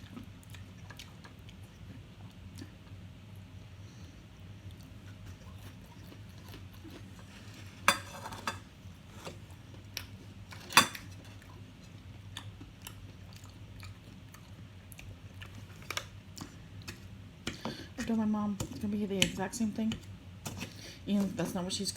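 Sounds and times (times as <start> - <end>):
chewing sounds: 0.0 - 3.0, 4.6 - 7.3, 11.2 - 17.0
low steady hum: 0.0 - 21.9
cutlery clinking against plate: 7.8 - 8.6.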